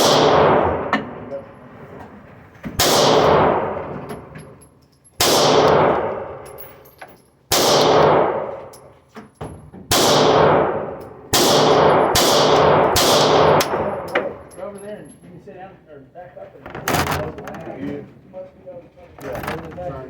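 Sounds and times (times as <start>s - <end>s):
pistol shots with reverberation: 0.0s - 0.9s, 2.8s - 3.9s, 5.2s - 6.5s, 7.5s - 8.6s, 9.9s - 14.4s.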